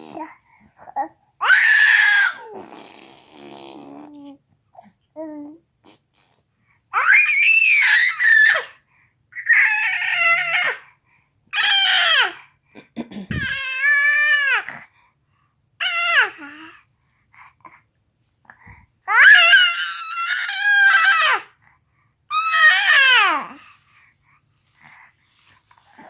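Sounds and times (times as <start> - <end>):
baby screaming: 1.4 - 2.6, 7.0 - 8.7, 9.4 - 10.8, 13.3 - 14.6, 19.1 - 21.5, 22.3 - 23.6.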